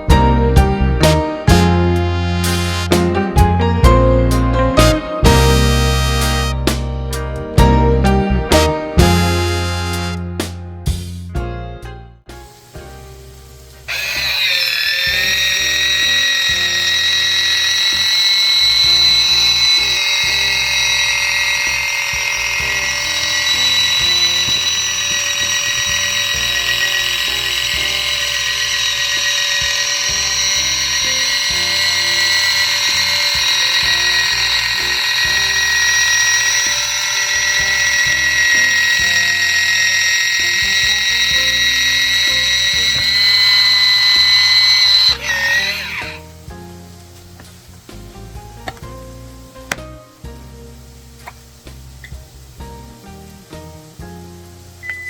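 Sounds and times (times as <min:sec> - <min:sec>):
background music: 0:00.0 - 0:55.0
appliance motor whining: 0:13.9 - 0:46.3.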